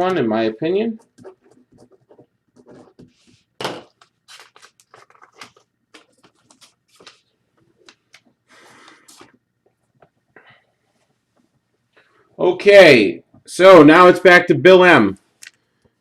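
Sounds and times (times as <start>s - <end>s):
trading cards rustling and scraping: 1.0s - 9.4s.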